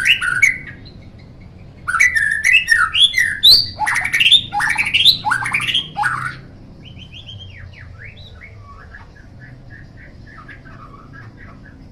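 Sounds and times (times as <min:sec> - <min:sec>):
songbird singing: 0:00.0 - 0:11.9.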